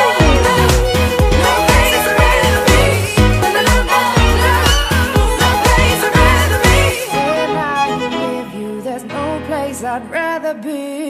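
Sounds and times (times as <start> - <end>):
pop music with low thumping beat: 0.0 - 8.1.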